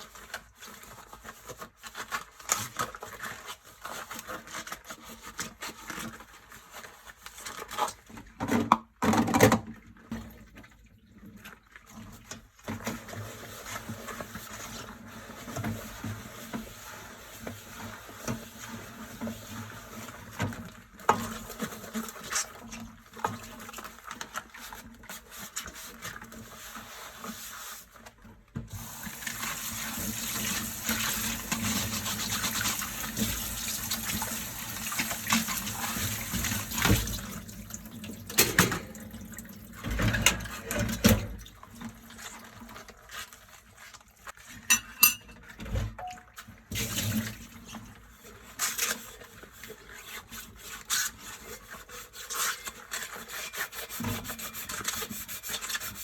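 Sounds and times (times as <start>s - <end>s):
tap water splashing: 28.6s - 41.4s
scrubbing dishes: 44.3s - 47.5s
dishes clinking: 44.7s - 45.4s.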